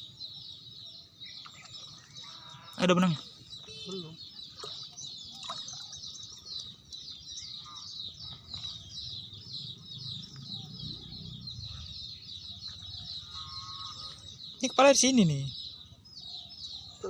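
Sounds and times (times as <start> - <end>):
birds chirping: 0.0 - 17.0.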